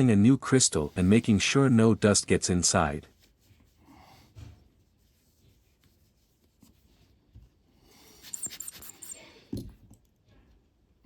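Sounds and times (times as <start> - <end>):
soft rubbing of watch parts: 0.6 - 2.2, 3.1 - 9.5.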